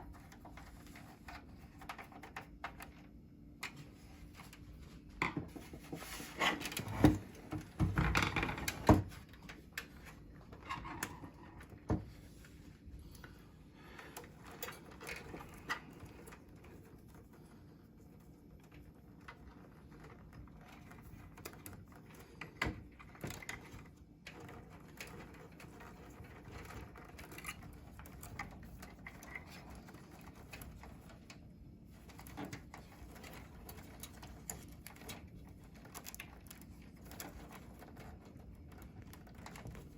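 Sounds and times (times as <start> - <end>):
hands handling computer hardware: 0.0 - 12.9.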